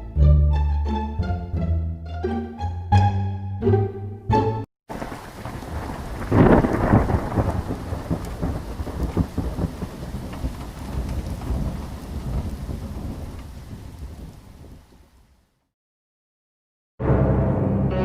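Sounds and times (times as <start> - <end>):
thunderclap rumbling: 4.9 - 15.2
steady rain: 4.9 - 15.6.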